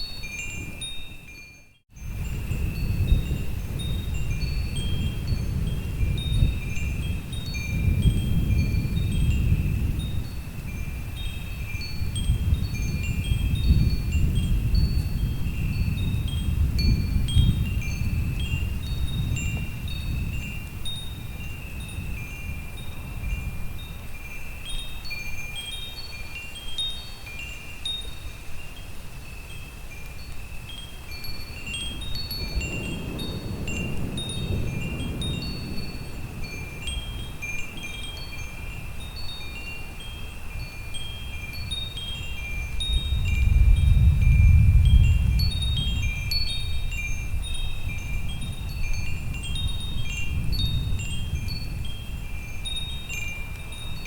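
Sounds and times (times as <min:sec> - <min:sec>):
wind chimes ringing: 0:00.0 - 0:54.0
low thunder rumbles: 0:32.4 - 0:37.4, 0:42.9 - 0:46.3.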